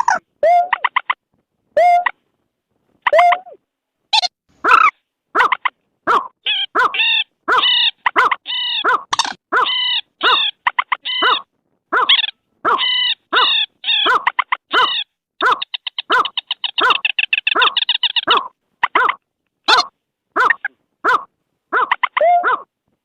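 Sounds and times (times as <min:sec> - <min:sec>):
fast rattling bird calls: 0:04.2 - 0:22.2
loud nasal bird calls: 0:04.6 - 0:22.7.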